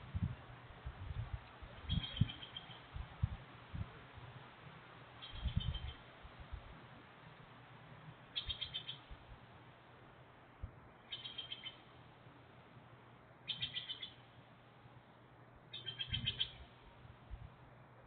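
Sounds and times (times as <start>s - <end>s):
bird calling pulsed notes: 1.9s - 2.8s, 8.3s - 9.1s, 11.0s - 11.9s, 13.4s - 14.2s, 15.7s - 16.7s.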